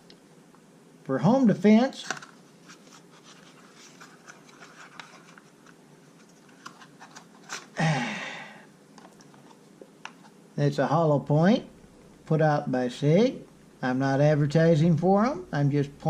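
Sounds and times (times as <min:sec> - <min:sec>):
person exhaling loudly: 0:07.8 - 0:08.7.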